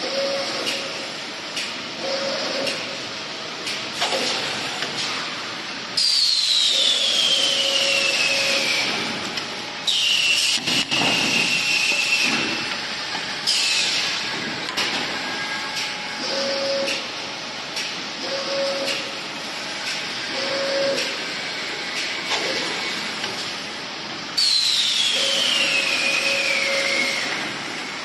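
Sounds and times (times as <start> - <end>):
steady machine hum: 0.0 - 28.0
tube cutting machine hissing whine: 6.0 - 9.2, 9.8 - 14.3, 24.4 - 28.0.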